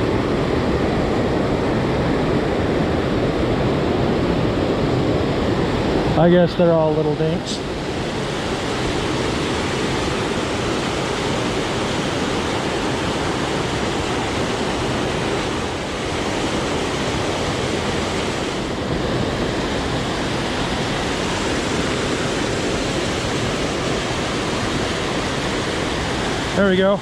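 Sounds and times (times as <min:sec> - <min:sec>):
creek rushing over rocks: 0:06.1 - 0:27.0.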